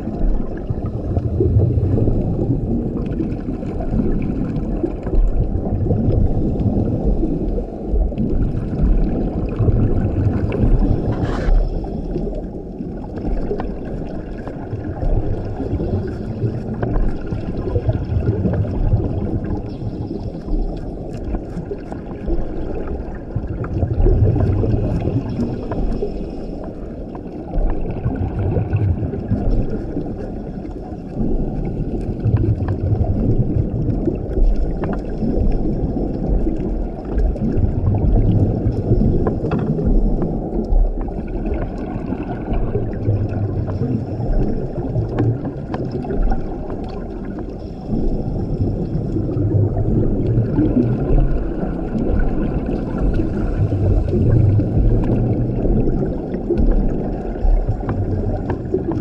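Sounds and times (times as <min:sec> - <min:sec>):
exhaled bubbles rushing: 0:00.0 - 0:59.0
faint reef clicks: 0:10.2 - 0:33.1, 0:33.8 - 0:59.0
scuba regulator breathing: 0:10.5 - 0:12.6, 0:51.8 - 0:55.3.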